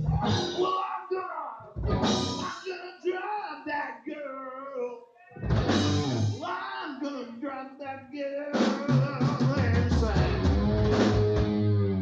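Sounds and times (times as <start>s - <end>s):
hard rock band playing: 0.0s - 0.7s, 1.8s - 2.6s, 5.4s - 6.5s, 8.6s - 12.0s
electric guitar bending notes: 1.8s - 2.4s, 5.4s - 6.4s, 10.2s - 12.0s.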